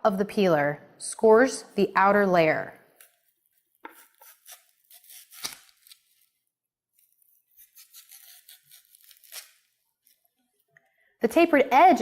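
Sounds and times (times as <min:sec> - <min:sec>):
onion skin scraping and crackling: 0:02.9 - 0:10.6.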